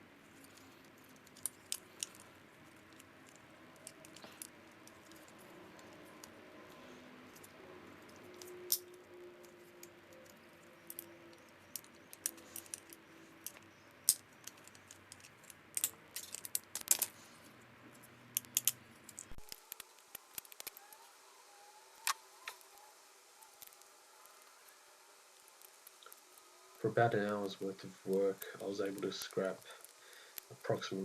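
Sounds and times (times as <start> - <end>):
clicks and metallic clinks: 18.3 - 19.6.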